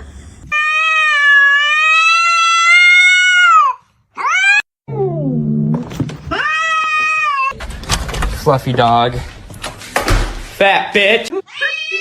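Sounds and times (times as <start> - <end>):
cat meowing: 6.3 - 7.6.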